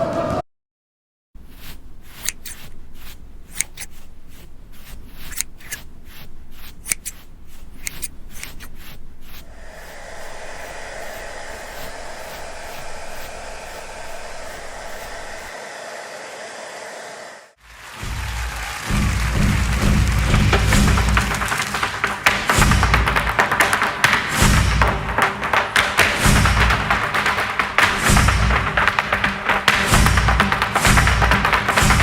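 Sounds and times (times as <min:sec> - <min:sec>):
sharp clicks or snips: 0:01.4 - 0:15.5
whirring motor and air noise: 0:01.4 - 0:17.6.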